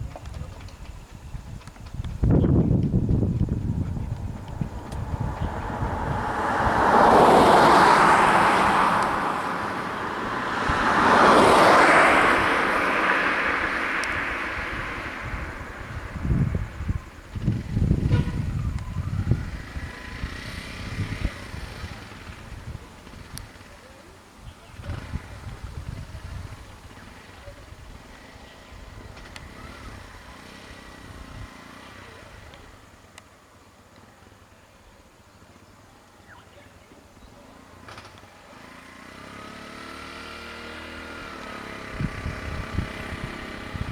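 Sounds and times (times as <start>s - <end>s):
vehicles passing on a road: 0.0s - 43.9s
faint clicks: 32.5s - 33.3s.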